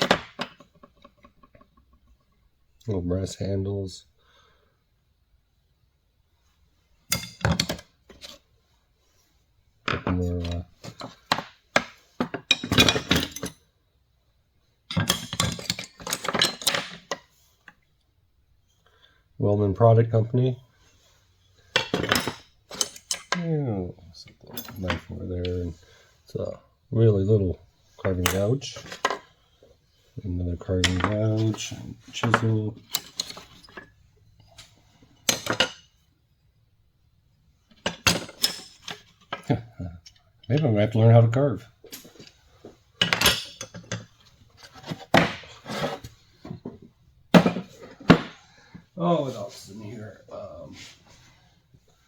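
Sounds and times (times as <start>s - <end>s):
metal tools clinking: 12.2s - 13.6s, 14.9s - 17.2s, 21.7s - 23.4s, 24.3s - 25.6s, 30.8s - 36.0s, 37.8s - 46.7s
steel tools clinking together: 21.8s - 23.4s, 43.0s - 44.0s.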